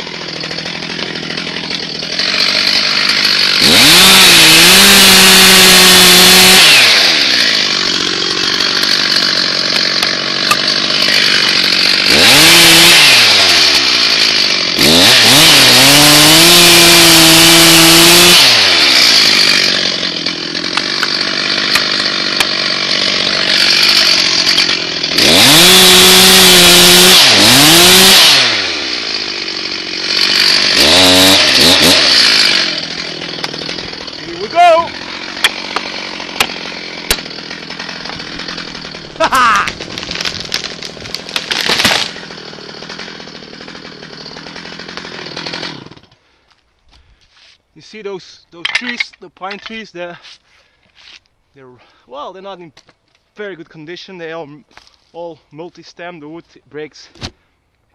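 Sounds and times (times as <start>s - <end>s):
chainsaw revving: 0.0s - 46.2s.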